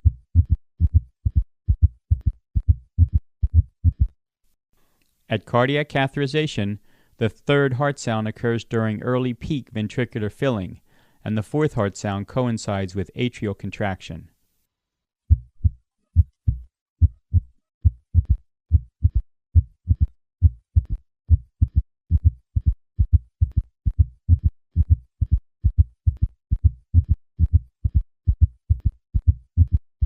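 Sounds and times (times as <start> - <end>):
galloping heartbeat thuds: 0.0 - 4.2, 15.3 - 29.8.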